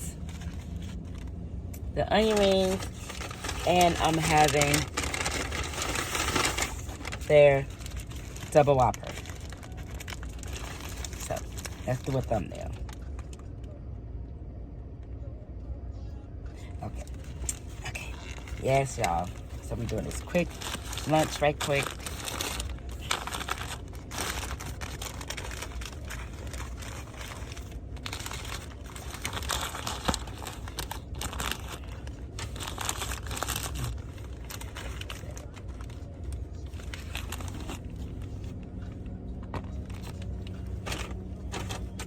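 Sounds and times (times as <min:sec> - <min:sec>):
paper wrappers crinkling: 0:00.0 - 0:13.5, 0:16.6 - 0:42.0
steady low hum: 0:00.0 - 0:42.0
paper tearing: 0:02.2 - 0:12.2, 0:16.8 - 0:35.8.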